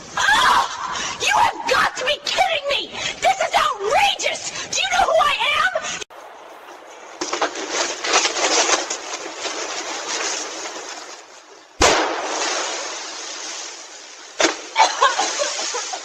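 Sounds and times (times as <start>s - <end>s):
short crack: 7.2s - 10.9s, 14.4s - 14.8s
steady hiss: 11.2s - 16.0s
loud bang: 11.8s - 13.1s.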